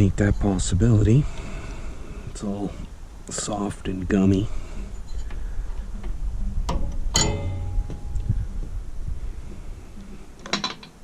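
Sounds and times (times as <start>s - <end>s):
low rumble: 4.3s - 10.3s
metallic clink with ring: 7.2s - 8.2s.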